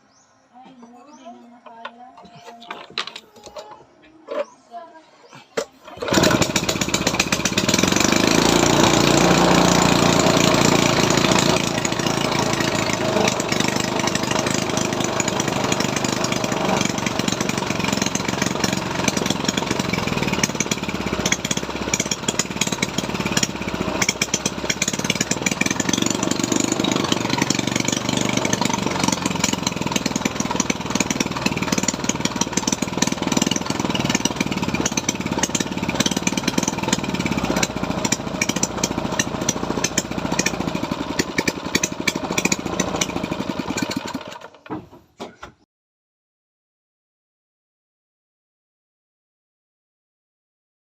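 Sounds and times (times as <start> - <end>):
engine running with firing clatter: 5.6 - 44.8.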